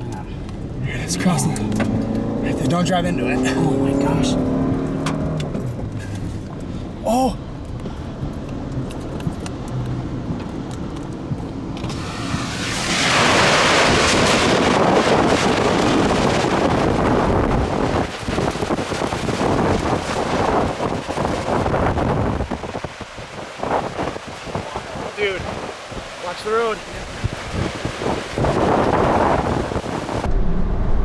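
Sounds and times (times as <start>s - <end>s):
wind buffeting microphone: 3.8s - 31.0s
low rumble: 30.2s - 31.0s.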